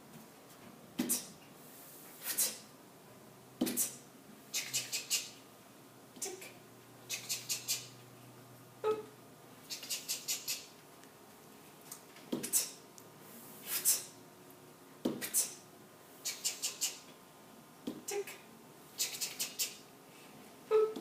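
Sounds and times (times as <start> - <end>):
marker squeaking on a surface: 3.6 - 5.4, 7.1 - 7.9, 9.7 - 10.7, 16.2 - 17.1, 19.0 - 19.8.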